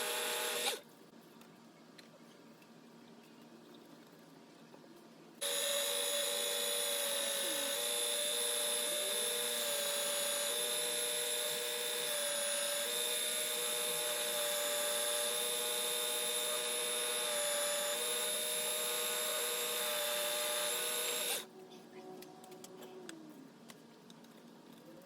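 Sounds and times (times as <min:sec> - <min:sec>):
electric motor whining: 0:00.0 - 0:00.8, 0:05.4 - 0:21.5.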